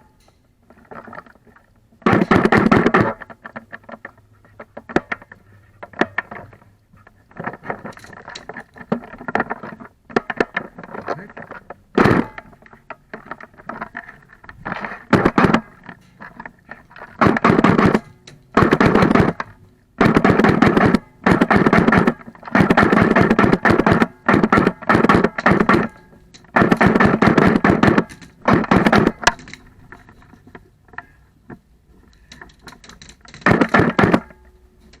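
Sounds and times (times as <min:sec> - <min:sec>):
airsoft guns firing full-auto: 0:02.0 - 0:03.2, 0:12.0 - 0:12.4, 0:15.1 - 0:15.6, 0:17.2 - 0:19.4, 0:20.0 - 0:29.4, 0:33.4 - 0:34.3.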